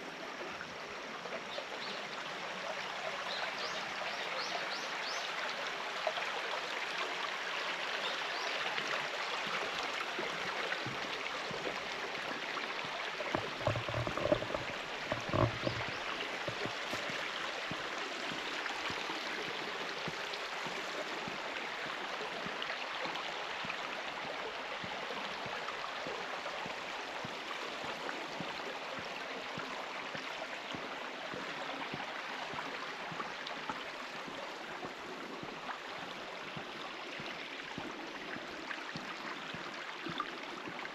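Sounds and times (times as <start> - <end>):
stream babbling over rocks: 0.0 - 40.9
low thumps: 13.3 - 17.2.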